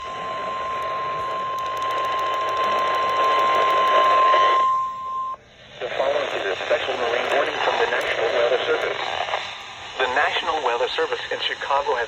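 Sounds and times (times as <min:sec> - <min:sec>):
high-pitched warning alarm tone: 0:00.0 - 0:05.4.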